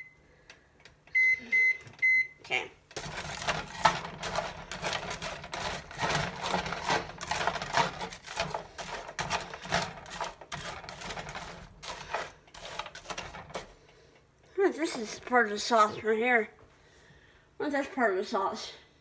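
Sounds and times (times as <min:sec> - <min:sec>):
spatula scraping a pan: 0:03.0 - 0:13.8.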